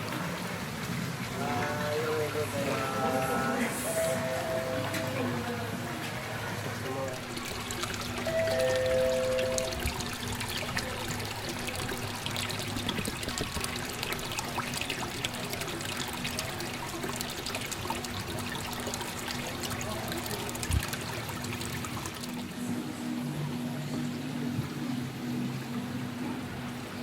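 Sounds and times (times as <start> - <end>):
water pouring into fish tank: 0.0 - 5.4, 6.6 - 22.6
faint steady hum: 0.0 - 27.0.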